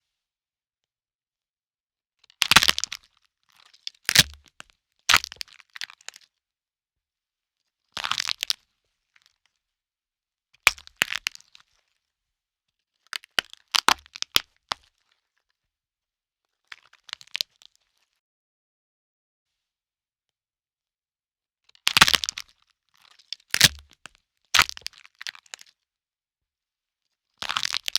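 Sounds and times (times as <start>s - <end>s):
sharp crunching bone cracks: 4.1s - 4.5s, 21.9s - 22.4s, 23.5s - 24.0s, 24.6s - 25.5s.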